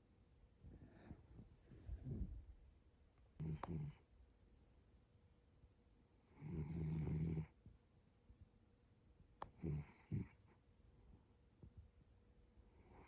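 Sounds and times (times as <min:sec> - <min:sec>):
cat snorting: 0:01.9 - 0:02.4, 0:03.4 - 0:04.0, 0:09.6 - 0:10.5
cat snoring: 0:02.0 - 0:02.4, 0:03.4 - 0:04.0, 0:06.3 - 0:07.6, 0:09.6 - 0:10.5, 0:12.7 - 0:13.0.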